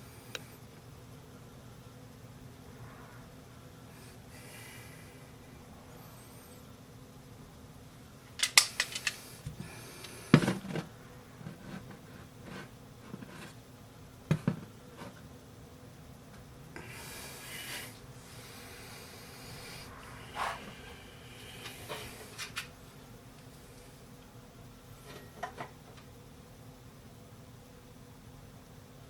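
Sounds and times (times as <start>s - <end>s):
soft rustle or scrape: 11.4s - 13.6s, 19.6s - 22.7s.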